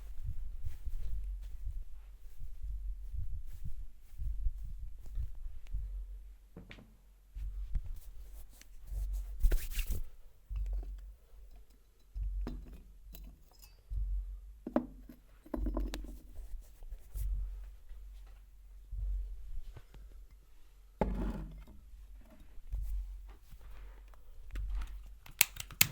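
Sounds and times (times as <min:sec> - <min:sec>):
dull low thuds of massage: 0:00.0 - 0:25.2
scratchy rubbing: 0:07.9 - 0:10.2.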